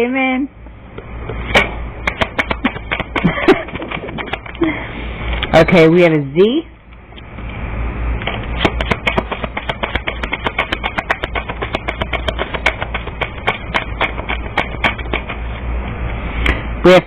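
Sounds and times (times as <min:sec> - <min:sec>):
cards being shuffled: 0:01.5 - 0:04.6, 0:08.3 - 0:15.4.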